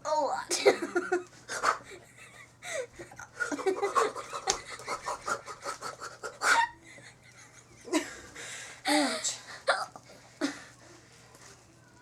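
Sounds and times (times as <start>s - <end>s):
person panting: 8.2s - 9.2s.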